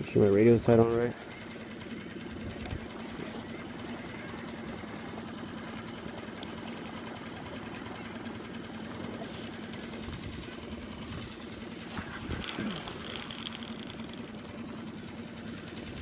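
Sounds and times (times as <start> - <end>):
outboard motor running: 0.0 - 16.0.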